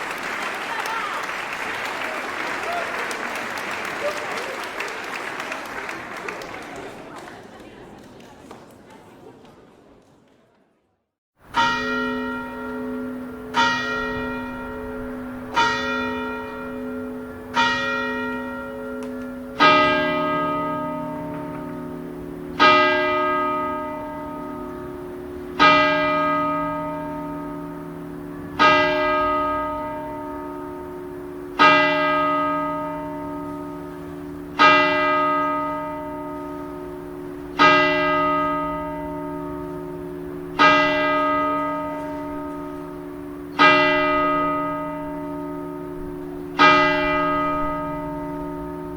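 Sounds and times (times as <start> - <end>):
church bell tolling: 11.5 - 48.9.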